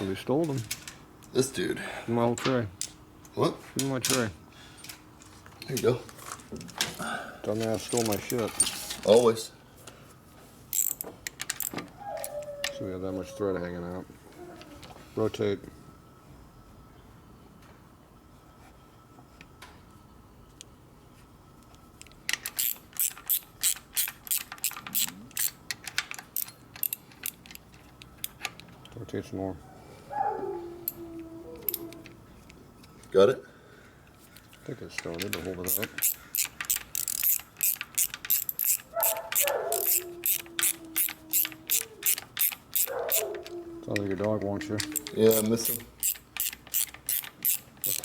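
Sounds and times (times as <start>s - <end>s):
socket ratchet clicking: 10.7s - 12.5s, 22.0s - 29.0s, 31.6s - 32.2s, 34.4s - 48.0s
dog whining: 11.9s - 13.6s, 14.3s - 15.0s, 29.6s - 32.2s, 38.8s - 45.8s.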